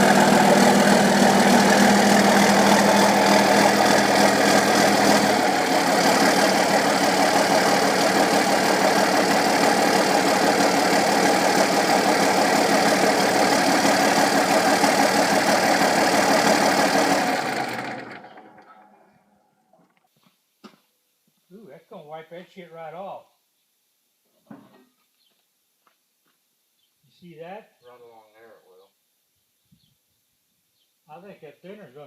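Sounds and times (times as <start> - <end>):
deep hum: 0.0 - 13.8
engine running steadily: 0.0 - 18.8.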